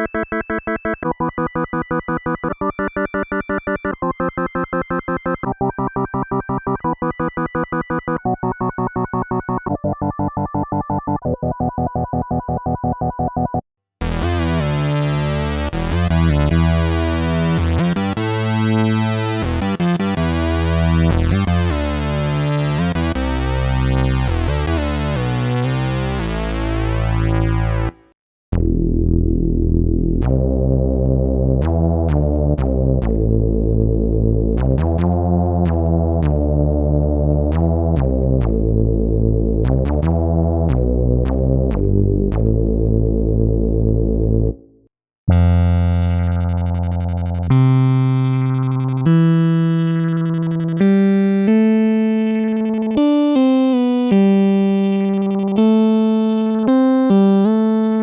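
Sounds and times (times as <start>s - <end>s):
plucked synthesizer notes: 0.0s - 44.7s, 45.3s - 58.0s
pulsing synthesizer notes: 0.1s - 44.6s, 45.3s - 58.0s
sustained synthesizer chords: 14.0s - 27.9s, 28.6s - 44.6s, 45.3s - 58.0s.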